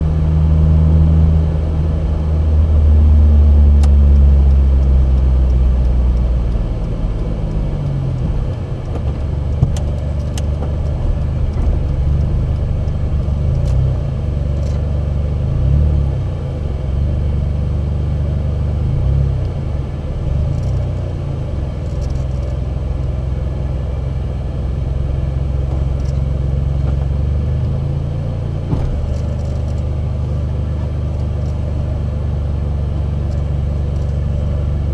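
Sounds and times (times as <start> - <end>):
small car engine idling: 19.4 - 34.9.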